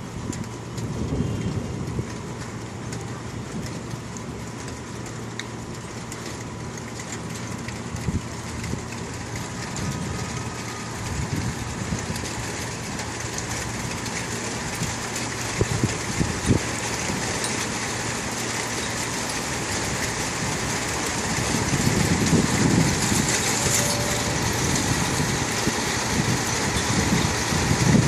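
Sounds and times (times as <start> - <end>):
ticks of raindrops: 0.0 - 28.0
heavy rain hissing: 7.5 - 28.0
low hum: 21.4 - 27.4.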